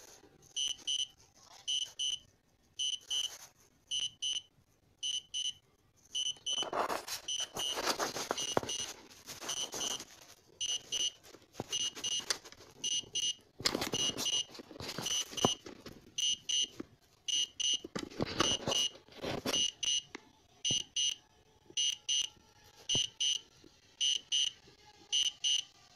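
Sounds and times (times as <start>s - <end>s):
electronic warning beeps: 0.6s - 1.1s, 1.7s - 2.2s, 2.8s - 3.3s, 3.9s - 5.6s, 6.2s - 6.7s, 7.3s - 7.8s, 8.4s - 8.9s, 9.5s - 10.0s, 10.6s - 15.6s, 16.2s - 16.7s, 17.3s - 17.8s, 18.4s - 18.9s, 19.5s - 21.2s, 22.9s - 23.4s, 24.0s - 24.6s, 25.2s - 25.6s.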